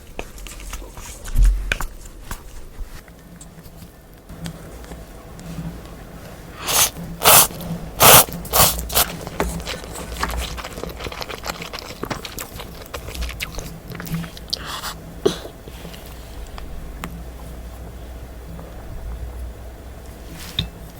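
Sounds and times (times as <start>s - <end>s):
loud noodle slurping: 6.6s - 15.0s
chewing and wet mouth sounds: 6.6s - 16.7s.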